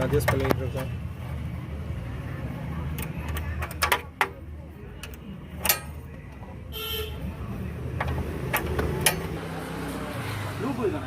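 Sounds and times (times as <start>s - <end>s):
vehicle horn toot: 6.7s - 7.2s.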